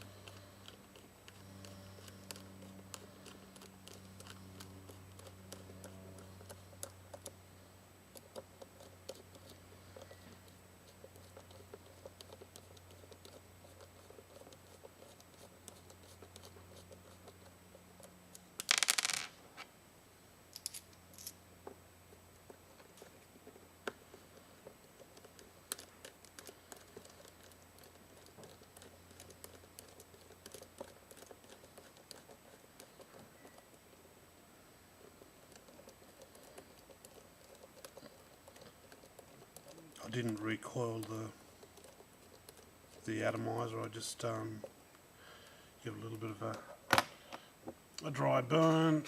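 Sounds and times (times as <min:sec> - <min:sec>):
small parts and tool clicking: 0:00.0 - 0:07.4, 0:11.2 - 0:19.3, 0:20.5 - 0:21.4, 0:23.8 - 0:33.9, 0:35.4 - 0:44.0
faint low hum: 0:00.0 - 0:49.0.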